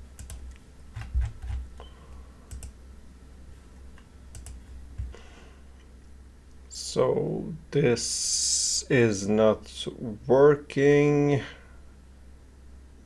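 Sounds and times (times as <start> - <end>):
steady low hum: 0.0 - 13.0
keyboard keys clicking: 0.2 - 1.6, 2.5 - 2.8, 4.0 - 5.1.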